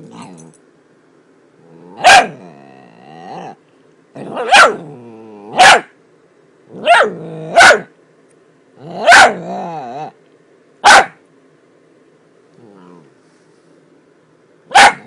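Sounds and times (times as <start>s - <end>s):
dog grumbling: 0.0s - 0.6s, 1.6s - 3.6s, 4.2s - 5.6s, 6.7s - 7.6s, 8.8s - 10.2s, 12.6s - 13.2s
dog barking: 2.0s - 2.4s, 4.3s - 4.8s, 5.5s - 6.0s, 6.8s - 7.9s, 9.0s - 9.4s, 10.8s - 11.2s, 14.7s - 15.0s.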